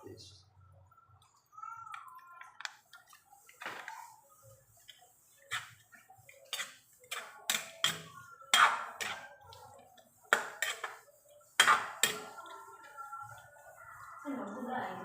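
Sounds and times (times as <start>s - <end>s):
kitchen utensils knocking and clinking: 10.3s - 12.5s.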